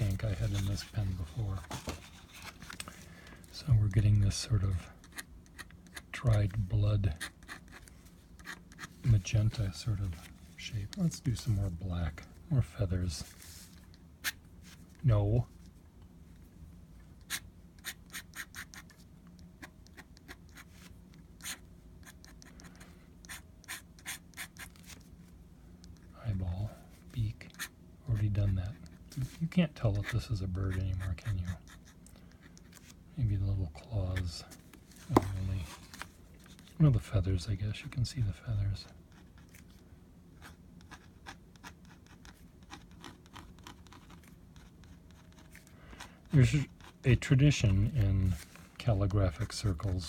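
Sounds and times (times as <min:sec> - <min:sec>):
low steady hum: 0:00.0 - 0:50.0
pen nib scratching paper: 0:07.2 - 0:09.0, 0:17.3 - 0:19.0, 0:19.6 - 0:20.8, 0:21.4 - 0:24.8, 0:29.9 - 0:32.8, 0:40.4 - 0:45.6.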